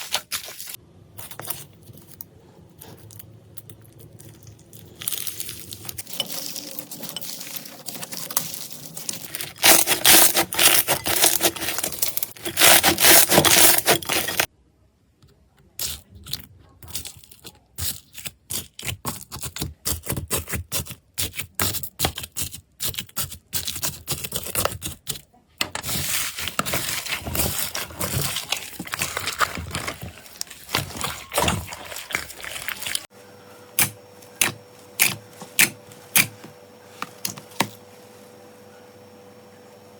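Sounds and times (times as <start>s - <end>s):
slime crackling and crunching: 3.9s - 14.5s, 25.8s - 33.1s.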